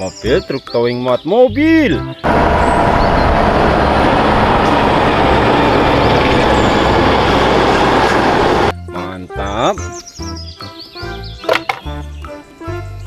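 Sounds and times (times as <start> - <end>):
large vehicle running: 2.2 - 8.7
faint whine: 2.3 - 8.7.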